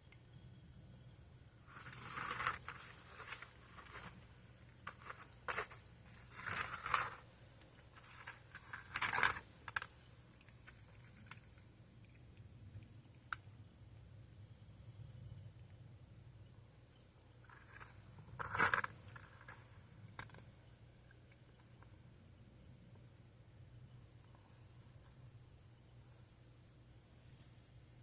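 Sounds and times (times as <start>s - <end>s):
crinkling: 1.1s - 13.5s, 17.0s - 22.0s
cat crunching dry food: 8.0s - 13.4s.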